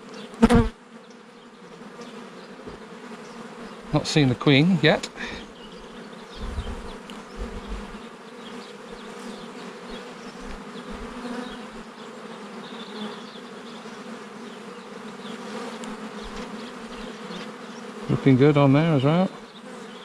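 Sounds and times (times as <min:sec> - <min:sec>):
honeybees humming: 0:00.0 - 0:20.0
low thumps: 0:06.4 - 0:08.0.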